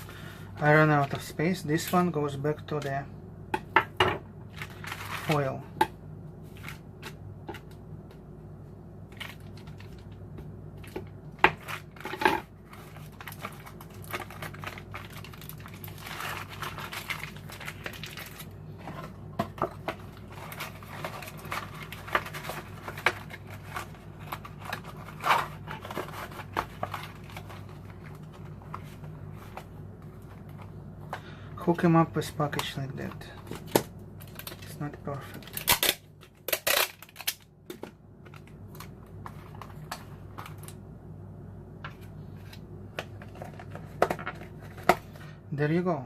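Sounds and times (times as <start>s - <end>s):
steady low hum: 0.0s - 46.0s
foil wrapper crinkling: 4.5s - 5.6s, 10.8s - 30.7s, 32.5s - 37.5s.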